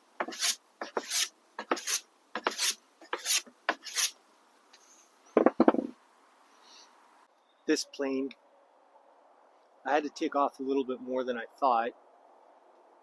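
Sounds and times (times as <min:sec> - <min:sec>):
knocks on wood: 0:05.4 - 0:05.9.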